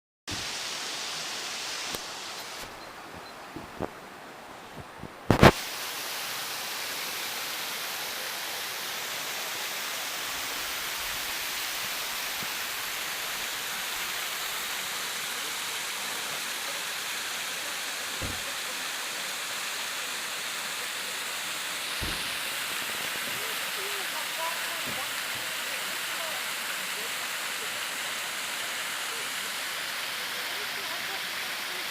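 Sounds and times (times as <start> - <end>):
waterfall rushing and splashing: 0.3 - 31.9
sharp knock: 22.0 - 22.5.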